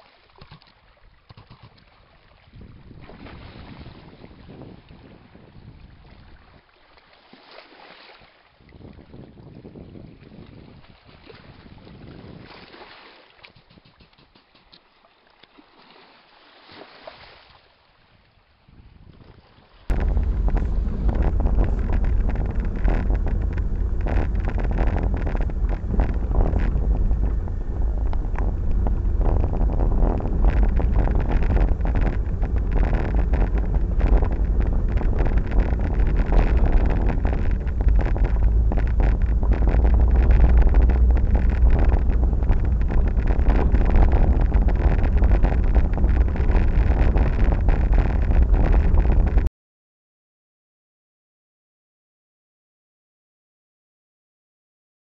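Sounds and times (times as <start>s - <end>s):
wind buffeting microphone: 2.5s - 6.6s, 8.6s - 12.6s, 18.6s - 49.5s
vehicle running noise: 19.9s - 49.5s.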